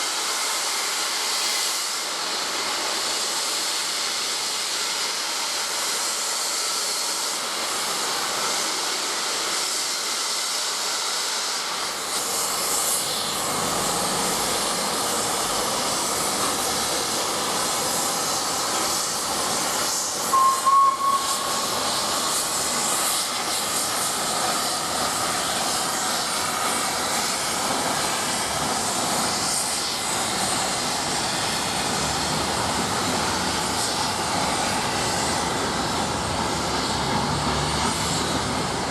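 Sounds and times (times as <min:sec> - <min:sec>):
steam hissing: 0:00.0 - 0:38.9
steam whistle blast: 0:20.2 - 0:22.4.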